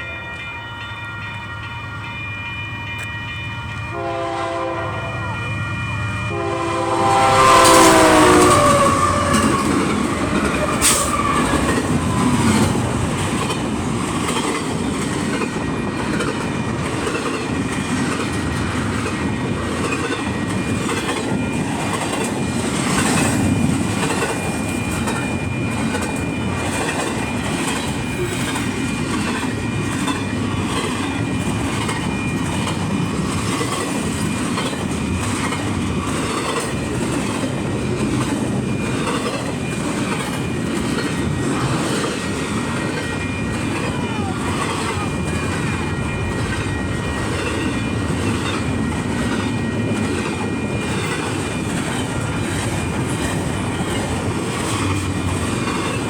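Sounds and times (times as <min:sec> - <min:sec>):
train horn: 0:03.0 - 0:12.6
train wheels clickety-clack: 0:07.0 - 0:56.0.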